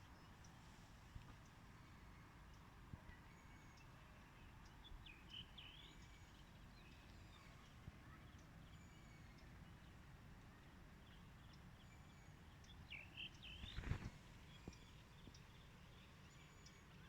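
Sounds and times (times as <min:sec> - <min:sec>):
songbirds chirping and whistling: 0:11.9 - 0:17.0.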